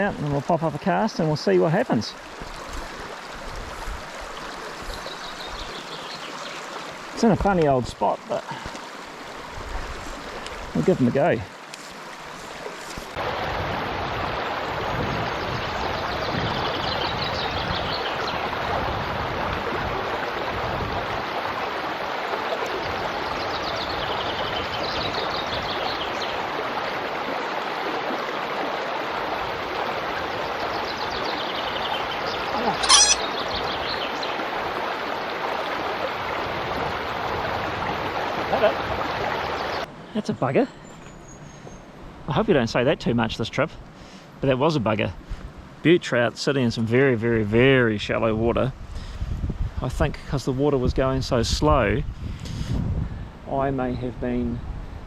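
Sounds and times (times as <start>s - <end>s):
stream water rushing: 0.0s - 40.1s
bird descending trill: 32.7s - 33.3s.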